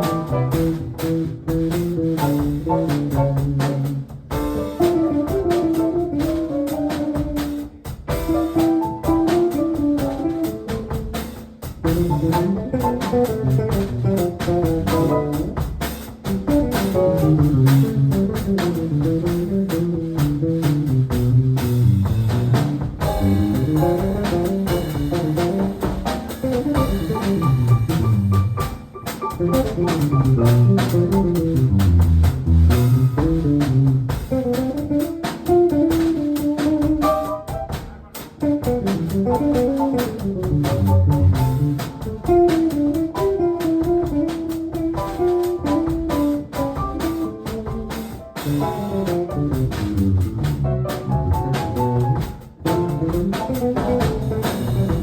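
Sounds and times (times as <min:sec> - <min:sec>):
piano lines: 0:00.0 - 0:01.3, 0:02.2 - 0:11.0, 0:23.0 - 0:32.1, 0:36.8 - 0:44.4, 0:45.0 - 0:55.0
moving bass line: 0:00.0 - 0:11.0, 0:11.8 - 0:55.0
drums and cymbals: 0:00.0 - 0:55.0.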